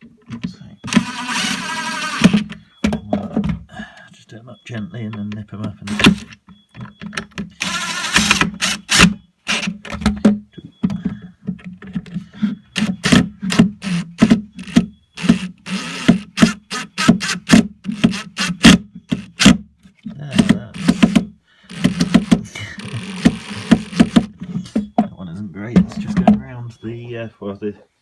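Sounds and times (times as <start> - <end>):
screwdriver rasping: 0.9 - 2.5, 7.6 - 9.8, 12.7 - 19.5, 20.7 - 24.3
screwdriver clicking and scraping: 5.9 - 10.0, 11.9 - 19.5, 20.4 - 24.3.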